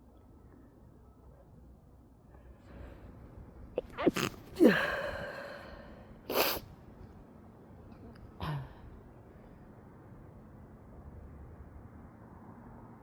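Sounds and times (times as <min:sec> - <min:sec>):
person sneezing: 0:03.8 - 0:05.4, 0:06.3 - 0:06.6.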